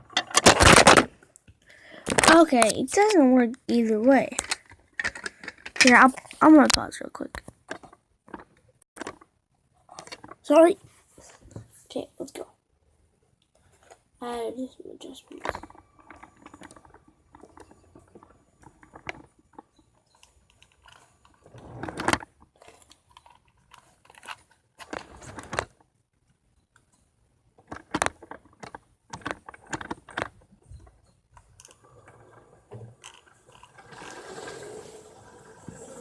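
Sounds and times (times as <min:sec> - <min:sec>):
plastic bricks clicking and rattling: 0:00.0 - 0:01.1, 0:04.0 - 0:09.3, 0:15.3 - 0:21.4, 0:27.6 - 0:32.0.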